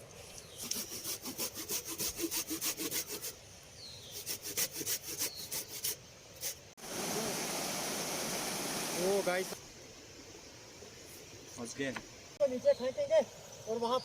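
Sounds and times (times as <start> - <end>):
hand saw cutting wood: 0.6 - 3.4, 4.1 - 6.0
river water rushing: 6.8 - 9.6.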